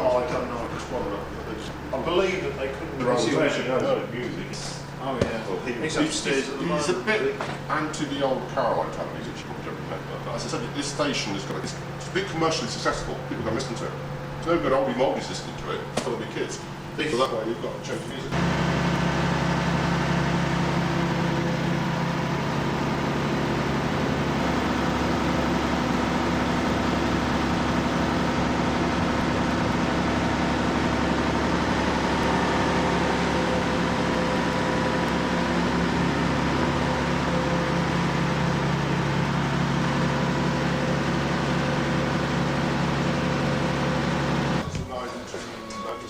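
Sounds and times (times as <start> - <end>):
machinery drone: 18.2 - 46.0.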